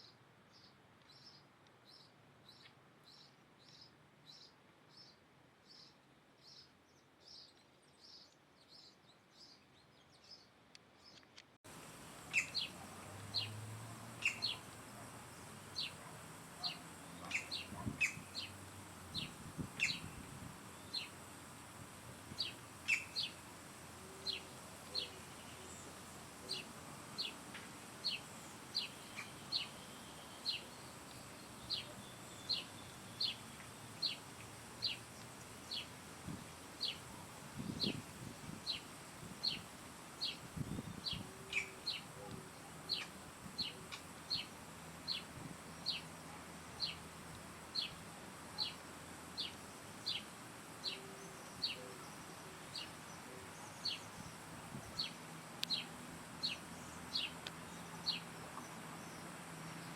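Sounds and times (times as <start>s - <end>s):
background hiss: 0.0s - 59.9s
bird chirping: 12.2s - 21.3s, 22.4s - 23.4s, 28.0s - 34.2s, 40.2s - 42.3s, 46.8s - 47.0s, 50.8s - 59.9s.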